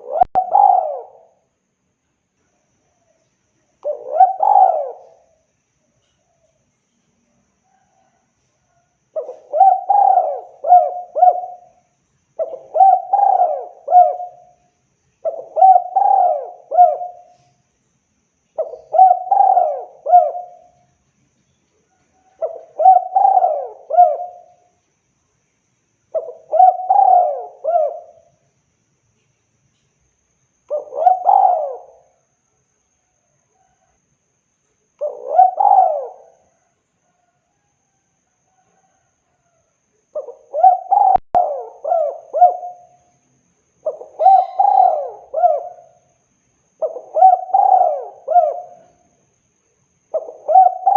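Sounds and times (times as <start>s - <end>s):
dove cooing: 0.0s - 1.4s, 3.8s - 5.4s, 8.8s - 14.6s, 15.2s - 17.5s, 18.6s - 20.8s, 22.2s - 24.7s, 26.1s - 28.4s, 30.7s - 32.2s, 35.0s - 37.7s, 40.1s - 43.1s, 43.8s - 46.1s, 46.8s - 49.2s, 50.1s - 50.9s.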